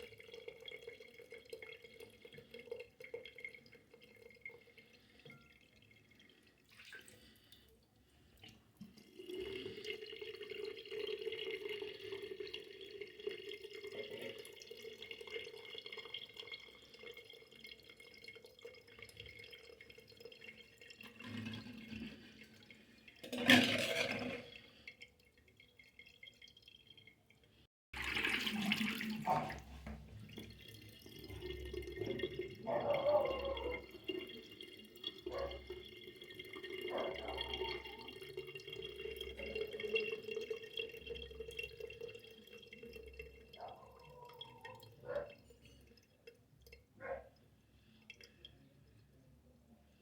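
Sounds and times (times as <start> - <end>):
water drips and splashes: 0.0 - 49.6
water dripping and trickling: 0.0 - 50.0.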